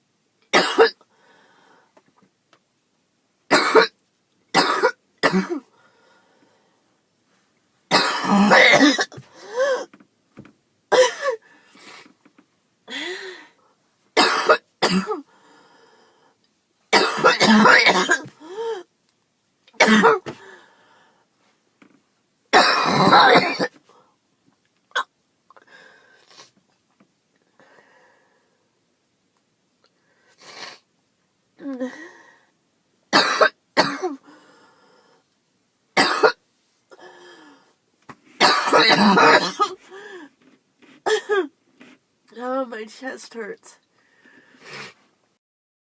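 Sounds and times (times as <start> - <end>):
girl coughing: 0.6 - 1.0, 3.5 - 3.9, 4.6 - 5.7, 7.9 - 9.9, 10.9 - 11.4, 14.2 - 15.3, 17.0 - 18.4, 19.8 - 20.4, 22.6 - 23.8, 33.2 - 34.2, 36.0 - 36.4, 38.4 - 39.8, 41.1 - 41.5.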